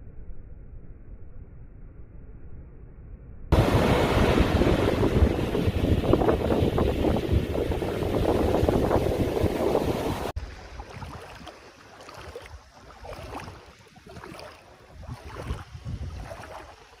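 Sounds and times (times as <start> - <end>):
wind buffeting microphone: 3.5 - 11.5, 12.2 - 17.0
water noise: 3.6 - 17.0
small irregular outdoor sounds: 10.2 - 17.0.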